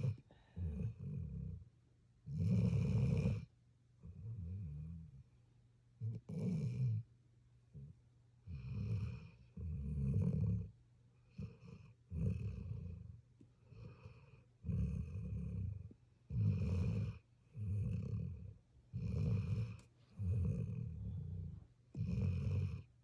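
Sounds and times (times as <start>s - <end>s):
puppy snoring: 0.0s - 1.6s, 2.3s - 5.2s, 6.0s - 7.1s, 7.7s - 23.0s.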